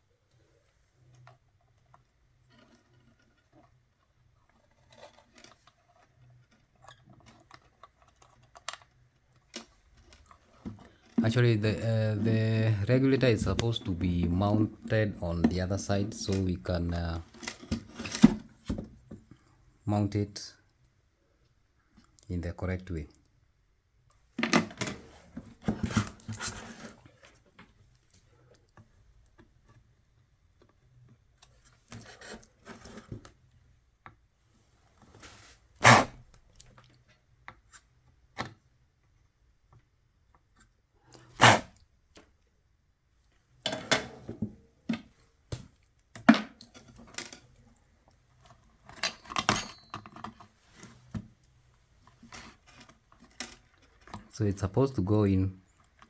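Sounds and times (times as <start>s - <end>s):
small metal tools clinking: 49.0s - 50.3s.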